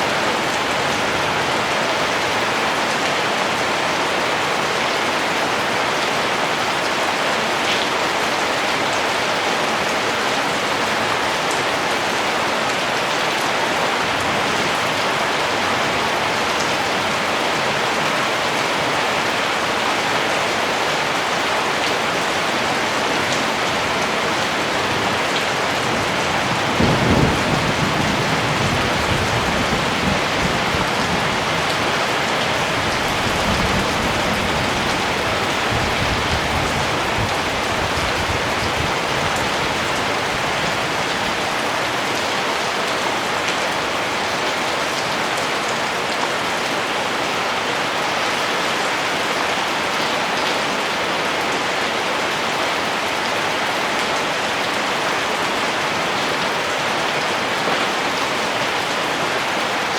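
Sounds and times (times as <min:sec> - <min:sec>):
steady rain falling: 0:00.0 - 0:59.9
distant thunder rumble: 0:26.1 - 0:39.2.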